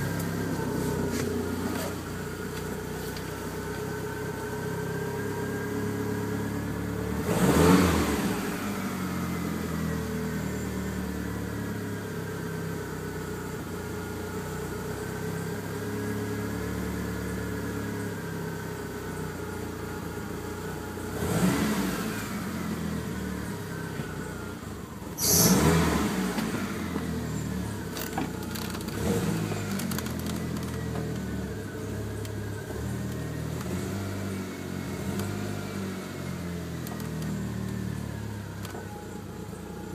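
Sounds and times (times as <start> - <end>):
car engine running: 0.0 - 39.9
loud engine bursts: 25.2 - 26.8.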